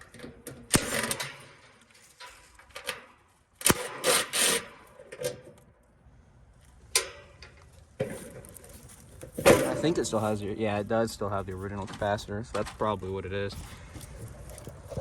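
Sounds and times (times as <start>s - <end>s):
metal scraping: 3.8s - 5.5s.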